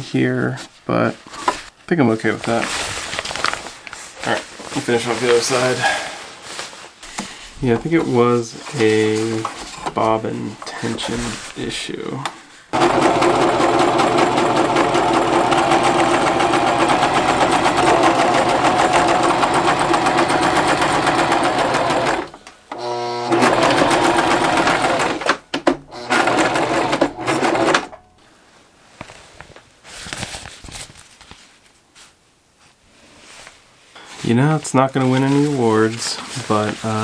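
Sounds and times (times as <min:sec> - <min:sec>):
sewing machine stitching: 0:12.7 - 0:28.1.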